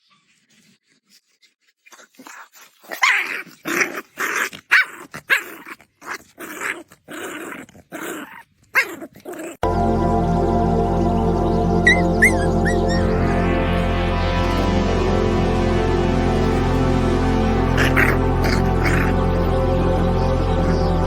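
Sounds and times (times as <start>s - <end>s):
puppy making little sounds: 1.8s - 9.6s.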